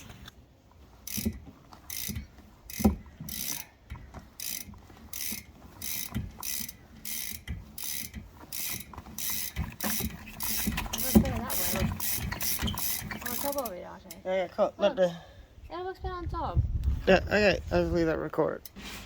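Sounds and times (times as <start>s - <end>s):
rhythmic mechanical scraping: 4.4s - 13.8s.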